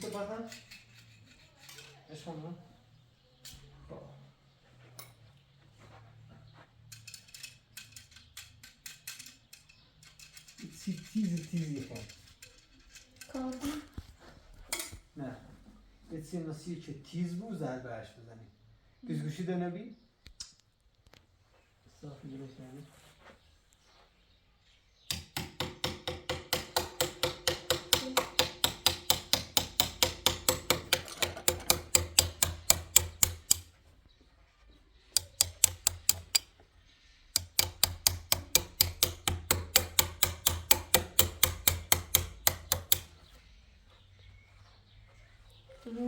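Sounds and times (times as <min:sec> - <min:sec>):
hammer tapping: 0:25.1 - 0:33.7, 0:35.2 - 0:36.5, 0:37.3 - 0:43.2.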